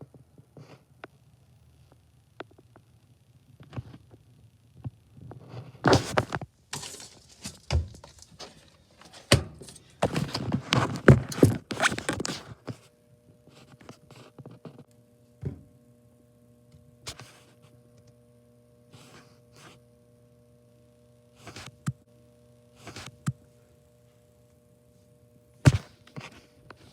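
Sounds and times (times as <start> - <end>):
steady low hum: 0.0 - 26.9
thunks knocks and scraping: 5.9 - 12.3.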